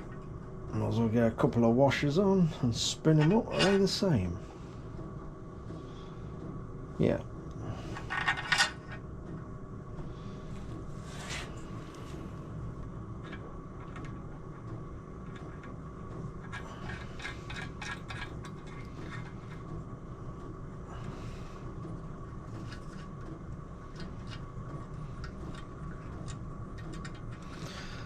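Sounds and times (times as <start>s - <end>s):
steady low hum: 0.0s - 28.0s
metal bolts clinking and scraping: 3.1s - 3.9s.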